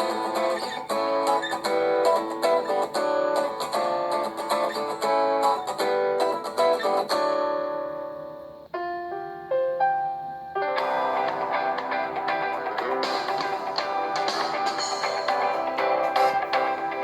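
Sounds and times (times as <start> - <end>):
plucked guitar ringtone: 0.0 - 8.4, 10.7 - 17.0
keyboard-like ringtone: 10.8 - 17.0.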